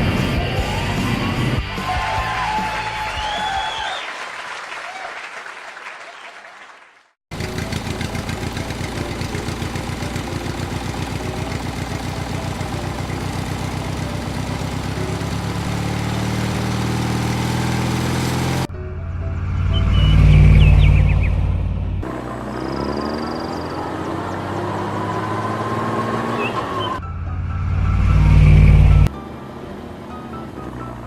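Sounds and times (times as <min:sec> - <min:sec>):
music: 0:00.0 - 0:03.9, 0:07.5 - 0:15.2, 0:18.7 - 0:20.8, 0:27.0 - 0:31.0
vehicle engine idling: 0:07.3 - 0:22.1.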